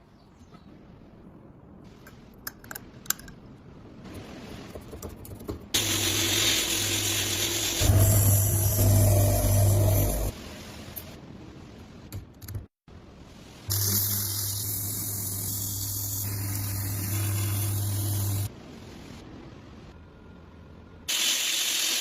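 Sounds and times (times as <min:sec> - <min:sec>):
hissing spray: 0:05.8 - 0:10.4, 0:13.7 - 0:18.5, 0:21.1 - 0:22.0.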